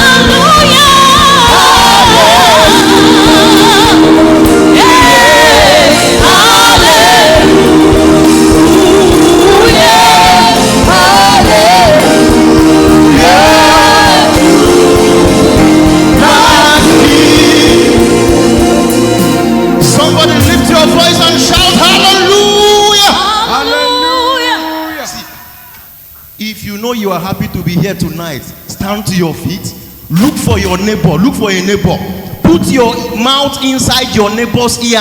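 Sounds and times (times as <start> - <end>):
choir holding chords: 0.0 - 25.6.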